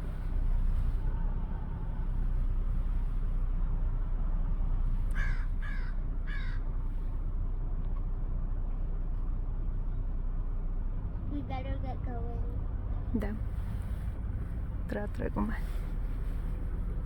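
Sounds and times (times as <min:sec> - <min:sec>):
steady low rumble: 0:12.1 - 0:17.0.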